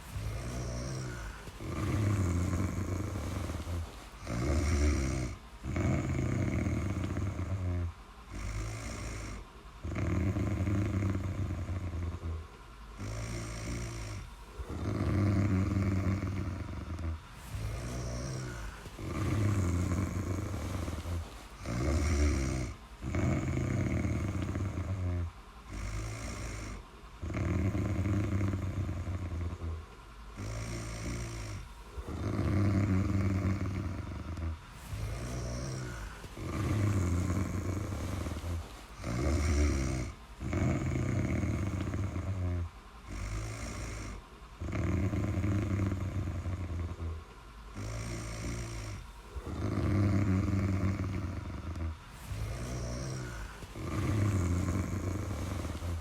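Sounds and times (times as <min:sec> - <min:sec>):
low rough snoring: 0:00.0 - 0:56.0.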